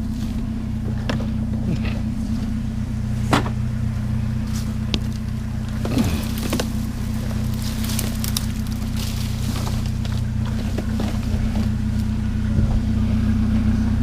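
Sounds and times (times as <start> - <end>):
truck engine idling: 0.0 - 14.0
knocks and clanks: 3.2 - 3.7.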